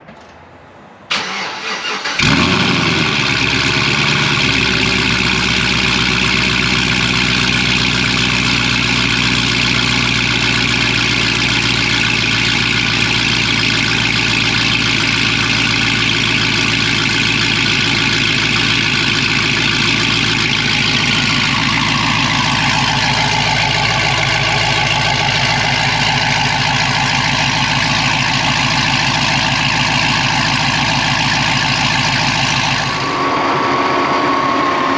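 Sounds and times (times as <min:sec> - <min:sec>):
engine starter cranking: 0:01.1 - 0:04.6
car engine idling loudly: 0:02.0 - 0:34.9.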